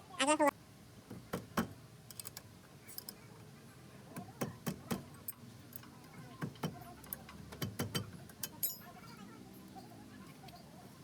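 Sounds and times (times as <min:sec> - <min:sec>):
light metallic clicks and taps: 0:04.2 - 0:08.9.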